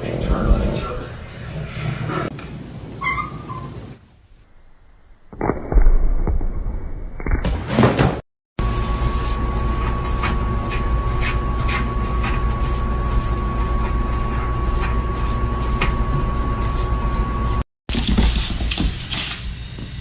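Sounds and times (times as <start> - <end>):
low mechanical rumble: 8.6 - 17.6.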